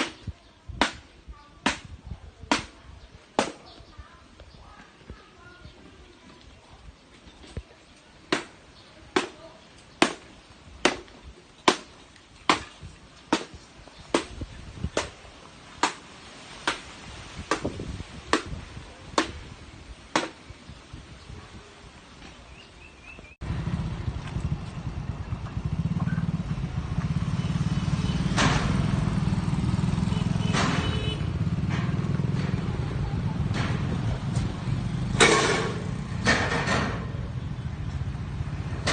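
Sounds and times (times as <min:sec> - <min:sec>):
engine-like rumble: 0:23.4 - 0:38.9.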